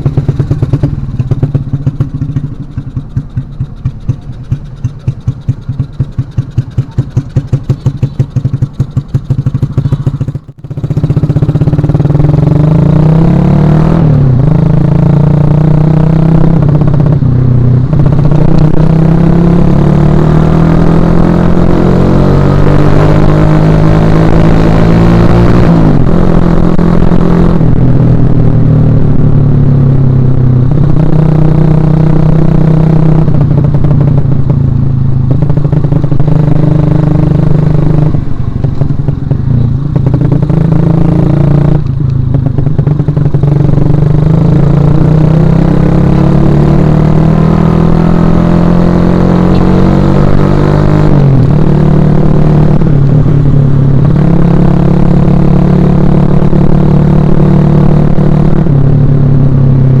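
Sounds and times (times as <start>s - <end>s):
motorcycle engine running: 0.0s - 60.0s.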